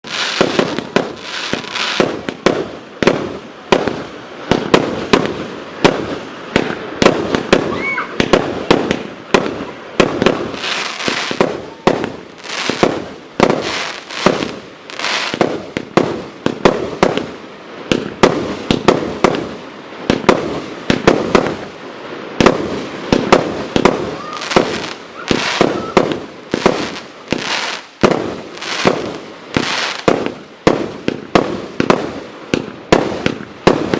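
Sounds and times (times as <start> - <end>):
fireworks aerial bursts: 0.0 - 33.9.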